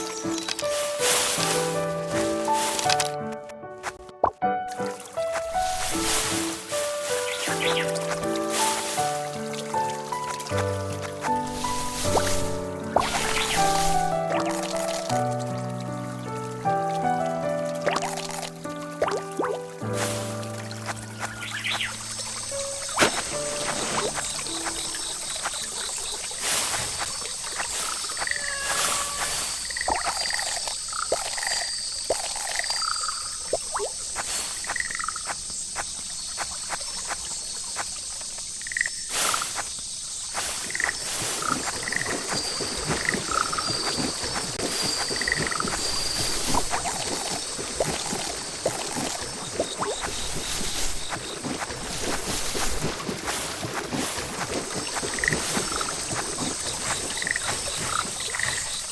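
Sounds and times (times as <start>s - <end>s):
frogs croaking: 4.0s - 58.9s
high-pitched insect drone: 40.4s - 53.0s.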